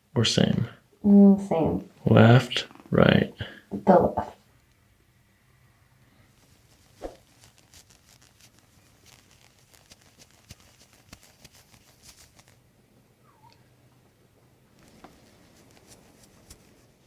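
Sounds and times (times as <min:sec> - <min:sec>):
rustling of clothing: 0:06.3 - 0:12.7, 0:14.7 - 0:17.0.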